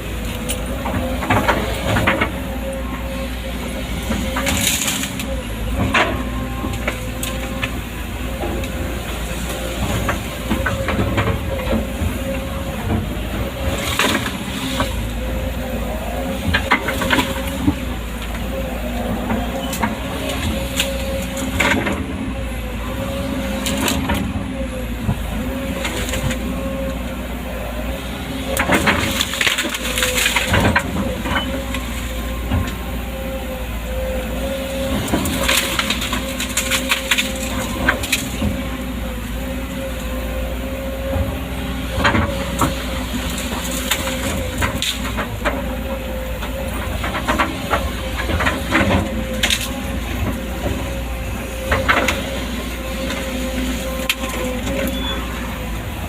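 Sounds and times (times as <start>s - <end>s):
excavator diesel engine running: 0.0s - 56.0s
wood cracking and crashing: 28.5s - 32.8s, 34.7s - 38.8s, 42.0s - 45.4s, 46.6s - 50.9s.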